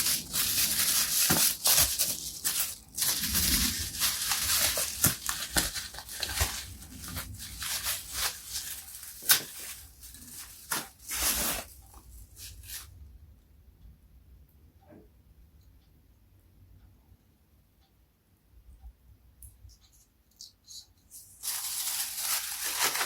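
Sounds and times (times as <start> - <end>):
packaging rustling and tearing: 0.0 - 12.9, 21.4 - 23.0.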